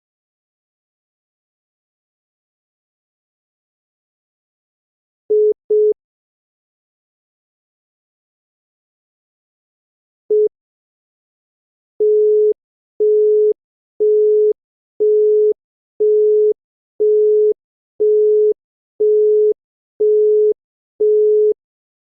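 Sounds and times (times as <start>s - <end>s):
telephone busy tone beeps: 5.3s - 6.0s, 10.3s - 10.5s, 12.0s - 21.6s.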